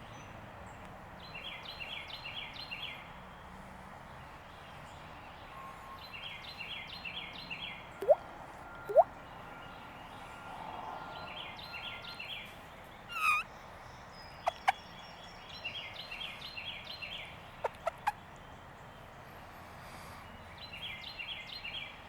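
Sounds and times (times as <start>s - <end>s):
short sharp bird calls: 8.9s - 9.1s, 13.1s - 13.4s.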